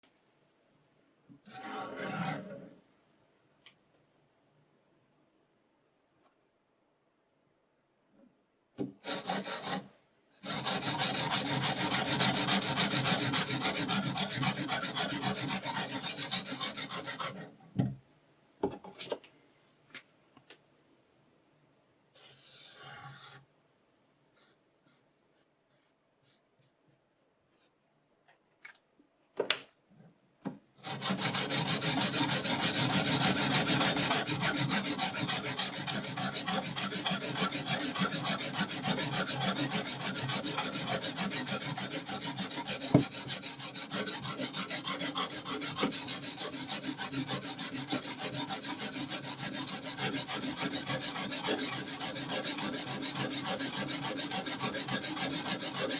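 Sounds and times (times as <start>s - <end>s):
sharpening stone rasping on knife: 9.0s - 9.8s, 10.4s - 17.5s, 30.8s - 55.9s.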